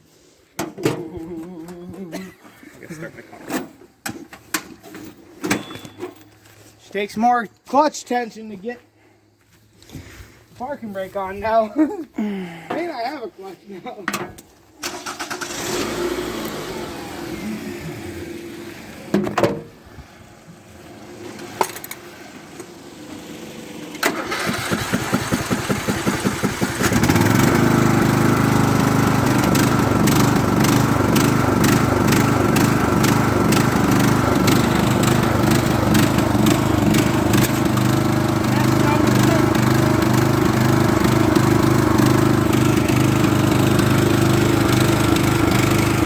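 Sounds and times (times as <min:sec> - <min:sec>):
engine starter cranking: 0:14.8 - 0:17.4, 0:23.9 - 0:46.0
riding mower engine running: 0:14.8 - 0:46.0.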